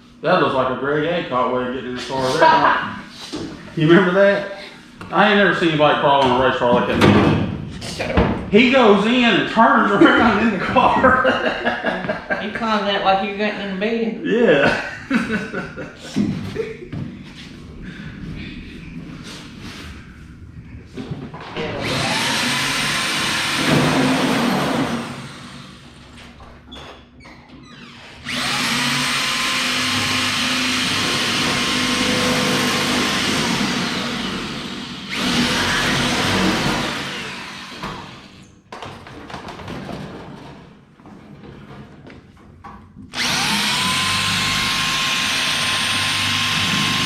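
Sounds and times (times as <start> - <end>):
power drill boring into steel: 21.8 - 25.7, 28.2 - 38.4, 43.2 - 47.0.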